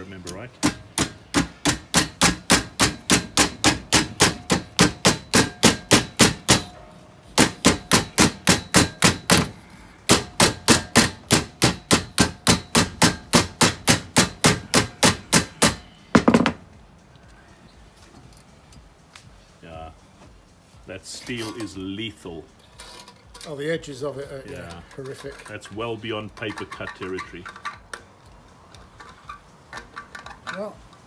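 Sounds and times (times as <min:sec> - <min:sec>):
metallic clatter: 0:00.3 - 0:16.6
hammer striking steel pipe: 0:00.5 - 0:16.6.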